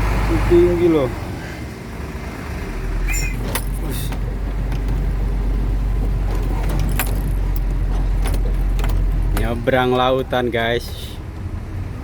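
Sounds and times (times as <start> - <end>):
truck engine droning: 0.0 - 12.0
sharp rattles: 3.1 - 10.2.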